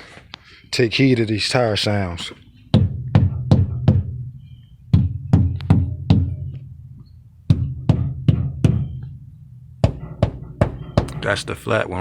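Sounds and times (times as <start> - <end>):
mallet knocking on truck tires: 2.7 - 6.8, 7.4 - 12.0.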